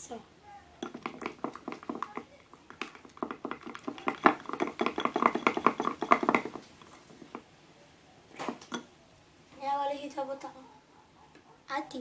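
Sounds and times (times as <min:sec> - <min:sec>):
spoon stirring slime: 0:00.8 - 0:07.5.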